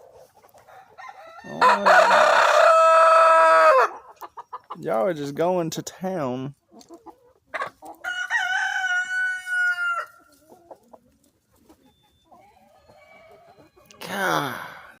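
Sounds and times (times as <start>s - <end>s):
rooster crowing: 0.7s - 4.0s, 8.0s - 10.2s
hens clucking softly: 3.8s - 4.8s, 6.6s - 8.1s, 9.4s - 14.0s.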